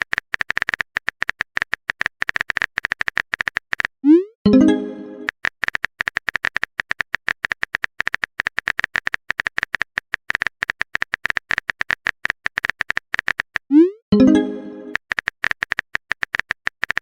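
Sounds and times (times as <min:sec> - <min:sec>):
message notification chime: 0:04.5 - 0:05.3, 0:14.1 - 0:15.0.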